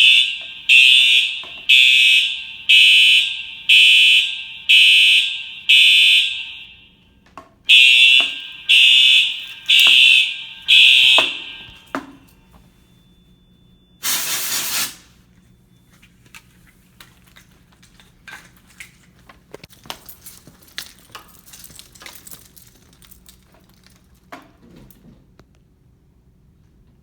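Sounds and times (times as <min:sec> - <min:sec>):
fire alarm horn blast: 0:00.0 - 0:15.3.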